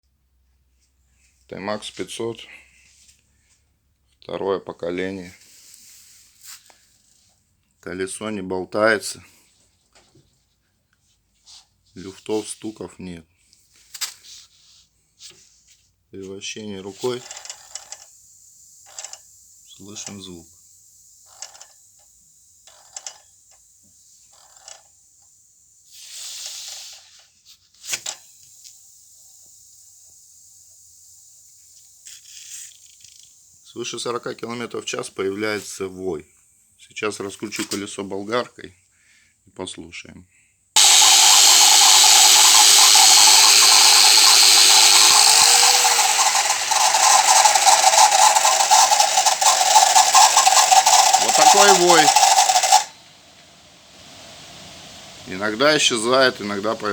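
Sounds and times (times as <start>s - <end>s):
wheel rubbing whir with ticks: 17.0s - 26.0s, 28.0s - 33.8s, 40.8s - 56.9s
angle grinder running: 40.8s - 56.9s
hissing rush: 40.8s - 56.9s.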